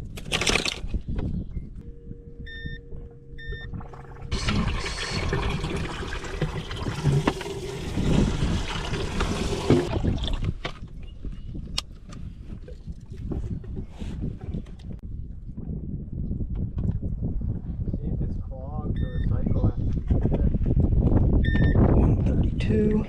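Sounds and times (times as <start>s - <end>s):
short electronic beeps: 1.8s - 4.3s, 19.0s - 19.4s, 21.4s - 21.8s
water rushing and splashing: 4.0s - 10.2s.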